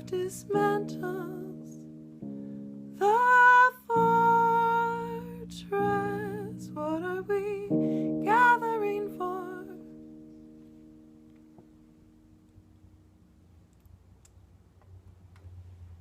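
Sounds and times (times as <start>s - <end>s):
woman singing with vibrato: 0.0s - 1.8s, 3.0s - 9.8s.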